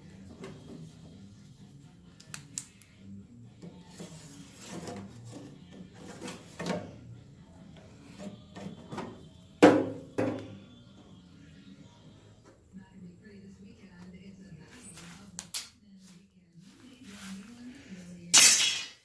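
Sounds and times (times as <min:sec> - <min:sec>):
scraping and rubbing of tools: 0:03.7 - 0:06.9
knocks of parts and tools: 0:08.6 - 0:10.5.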